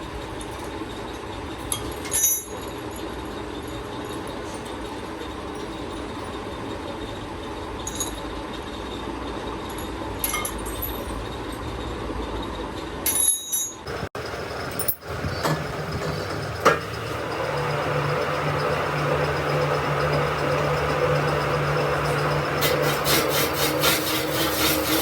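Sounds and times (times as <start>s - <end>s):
workshop noise: 9.4s - 25.0s
low machine hum: 13.9s - 25.0s.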